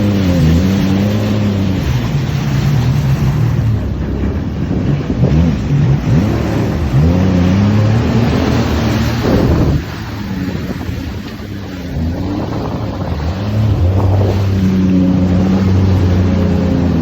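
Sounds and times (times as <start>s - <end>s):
jet ski engine running: 0.0s - 17.0s
steady rushing noise: 0.0s - 17.0s.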